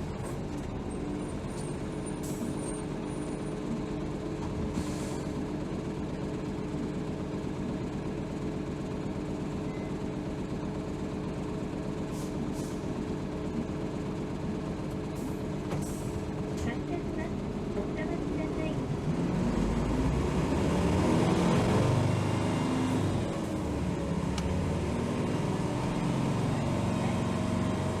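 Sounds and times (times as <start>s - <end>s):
bus engine whine: 0.0s - 28.0s.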